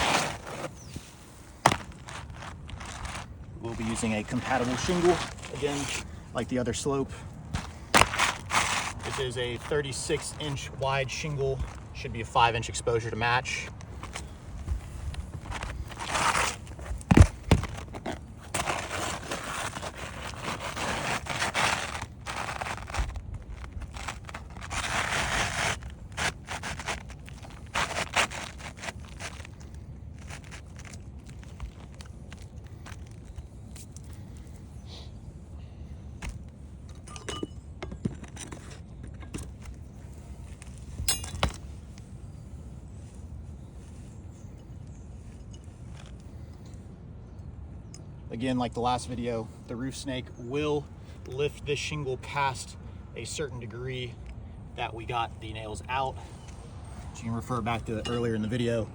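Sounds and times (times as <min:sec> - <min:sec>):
shingles scraping on roof: 0:00.0 - 0:03.3, 0:07.6 - 0:10.5, 0:14.0 - 0:29.6.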